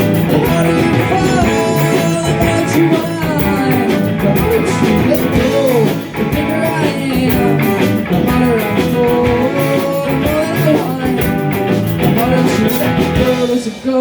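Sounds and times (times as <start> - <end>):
lead guitar bending notes: 0.0 - 13.5
live rock band playing: 0.0 - 14.0.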